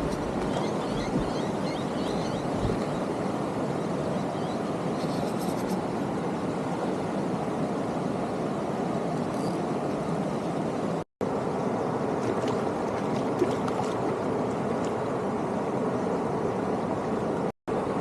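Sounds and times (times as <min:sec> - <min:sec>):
water flowing over rocks: 0:00.0 - 0:03.6.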